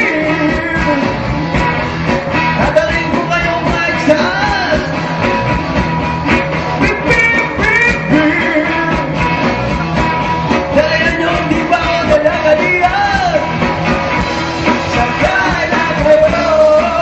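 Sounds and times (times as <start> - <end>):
person singing: 0.0 - 1.4, 2.5 - 5.4, 6.7 - 9.5, 10.7 - 13.6, 14.7 - 17.0
drums: 0.0 - 17.0
guitars: 0.0 - 17.0.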